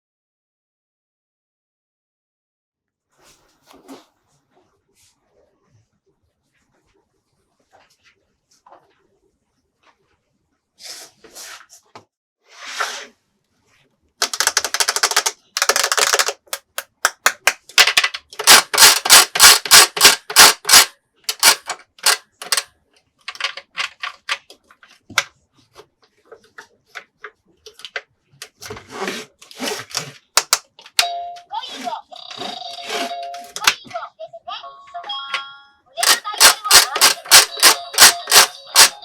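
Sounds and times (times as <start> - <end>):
rapid sharp clicks and rattles: 14.2 - 24.6, 36.0 - 39.0.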